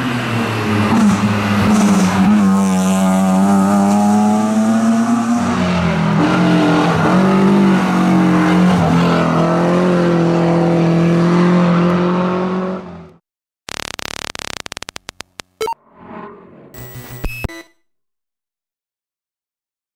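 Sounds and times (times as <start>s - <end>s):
race car engine revving: 0.3s - 13.2s
rapid sharp clicks: 13.7s - 15.8s.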